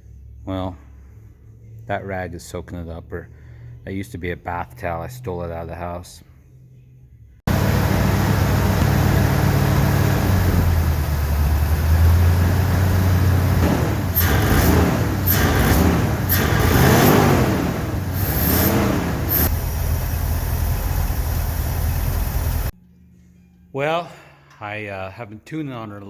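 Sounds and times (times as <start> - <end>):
truck engine idling and revving: 7.5 - 22.7.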